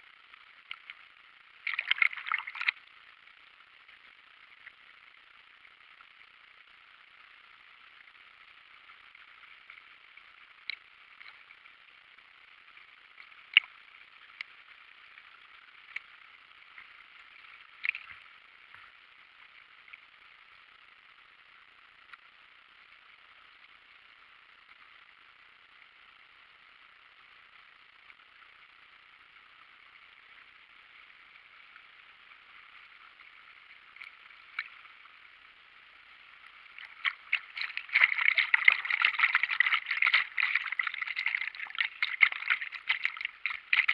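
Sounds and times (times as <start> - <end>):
water splashing and gurgling: 1.6 - 2.8, 16.8 - 18.2, 36.5 - 43.9.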